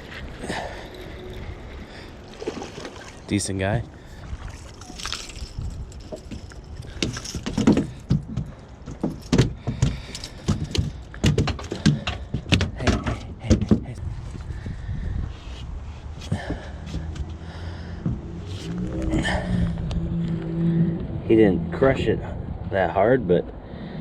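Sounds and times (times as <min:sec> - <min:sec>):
fish and tackle knocking and rattling: 0:04.2 - 0:14.0.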